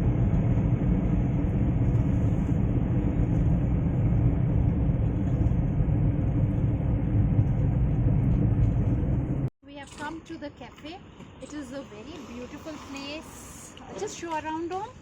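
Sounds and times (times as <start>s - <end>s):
road and engine rumble inside car: 0.0s - 9.5s.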